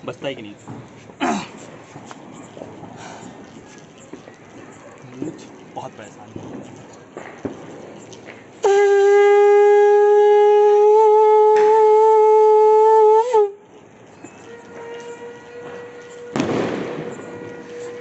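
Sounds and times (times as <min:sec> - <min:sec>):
conch shell blown: 0:08.6 - 0:18.0.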